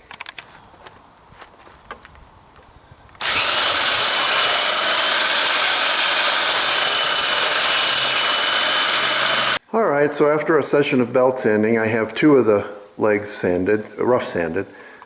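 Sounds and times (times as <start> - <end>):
belt sander running: 3.2 - 9.6.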